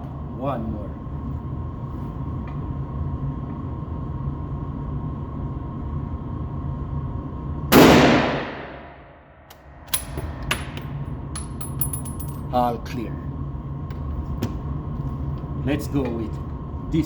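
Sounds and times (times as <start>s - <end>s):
rifle shot: 7.7s - 9.0s.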